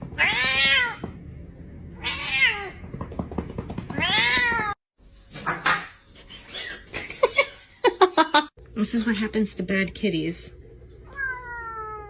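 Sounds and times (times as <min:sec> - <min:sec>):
cat yowling: 0:11.0 - 0:12.0.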